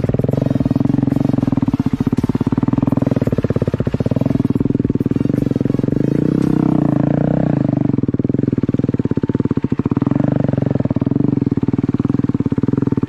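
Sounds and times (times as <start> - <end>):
motorcycle engine running hard: 0.0 - 13.0.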